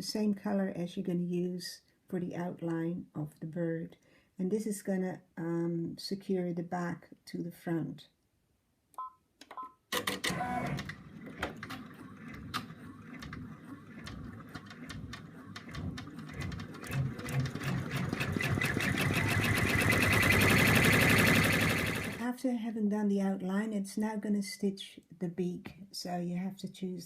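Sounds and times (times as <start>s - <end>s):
embroidery machine stitching: 9.9s - 22.2s.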